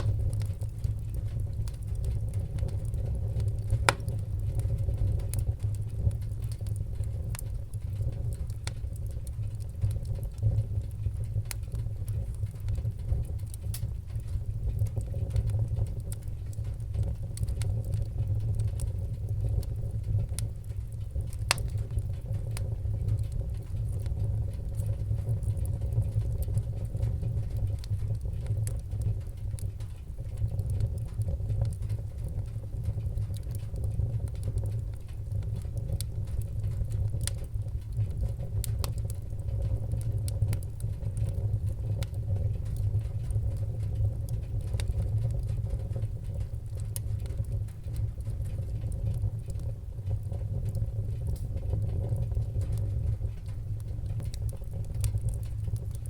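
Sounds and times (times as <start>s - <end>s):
fire crackling and popping: 0.0s - 56.0s
low rumble of flames: 0.0s - 56.0s.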